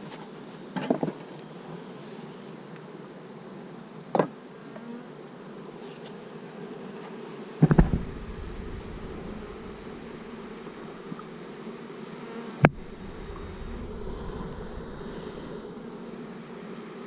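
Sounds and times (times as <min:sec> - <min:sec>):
honeybees buzzing: 0:06.4 - 0:17.0
bumps and rumble: 0:07.6 - 0:11.4, 0:12.7 - 0:16.5.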